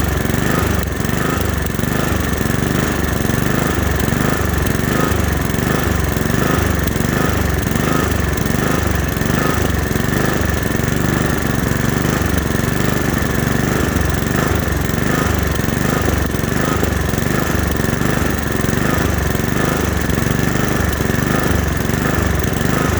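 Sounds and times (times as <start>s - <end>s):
lawn mower engine running: 0.0s - 22.9s.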